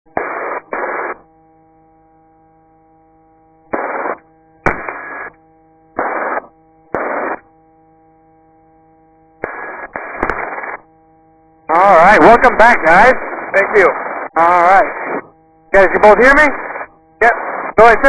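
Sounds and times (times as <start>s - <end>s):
steady electrical hum: 0.1s - 18.0s
radio static bursts: 0.2s - 1.2s, 3.8s - 5.3s, 6.0s - 7.4s, 9.4s - 10.8s, 11.7s - 18.0s.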